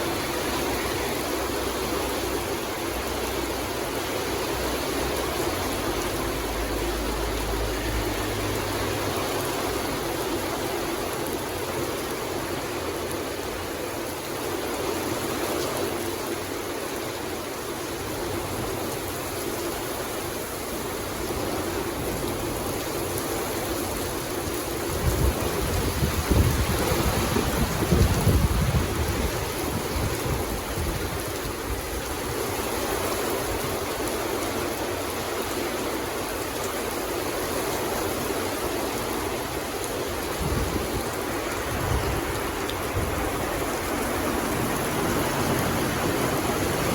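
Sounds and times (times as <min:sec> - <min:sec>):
steady rain: 0:00.0 - 0:46.9
low rumble of thunder: 0:25.0 - 0:31.4.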